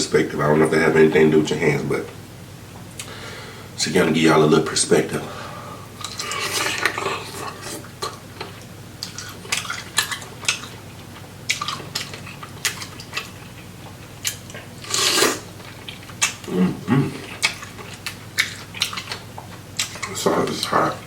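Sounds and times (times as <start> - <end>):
wet chewing and lip smacks: 8.0 - 14.7, 17.2 - 20.7.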